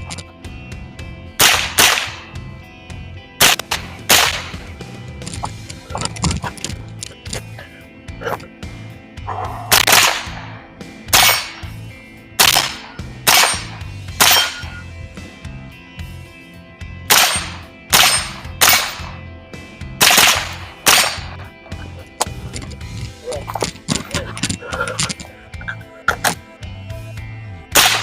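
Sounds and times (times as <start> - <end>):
rifle shots: 1.4 - 2.3, 3.4 - 4.8, 9.7 - 11.7, 12.4 - 14.8, 17.1 - 19.2, 20.0 - 21.5, 27.7 - 28.0.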